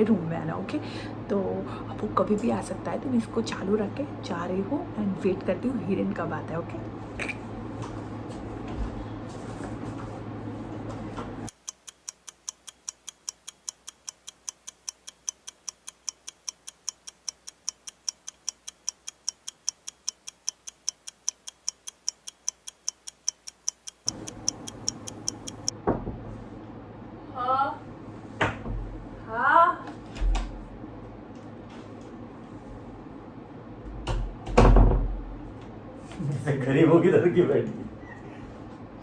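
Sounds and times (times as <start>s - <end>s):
clock ticking: 11.5s - 25.7s.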